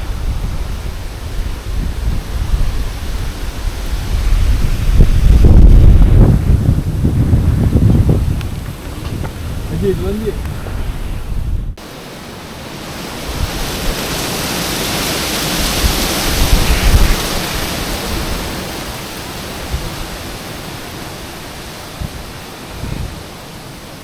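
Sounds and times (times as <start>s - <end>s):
low buffeting thumps: 0.0s - 11.8s
strong wind gusting: 0.0s - 24.0s.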